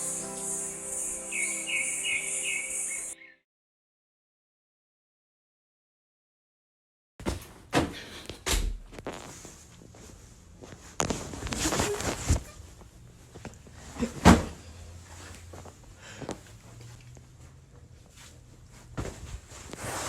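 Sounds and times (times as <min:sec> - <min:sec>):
scuffing noise: 0:08.9 - 0:13.4.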